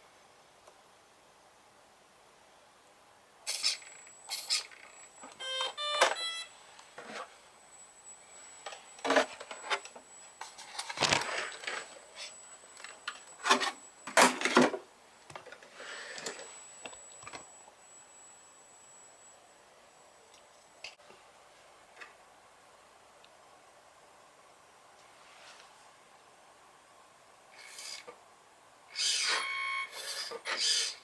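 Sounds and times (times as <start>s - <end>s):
short pitched beeps: 5.4s - 6.5s
rc vehicle tracks clattering: 12.8s - 14.8s, 29.0s - 31.0s
thin high whine: 15.8s - 20.3s.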